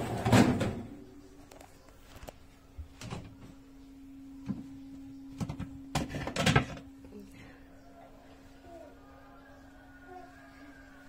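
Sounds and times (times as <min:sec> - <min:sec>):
dishwasher clatter: 0:00.0 - 0:00.9
steady low hum: 0:00.0 - 0:11.0.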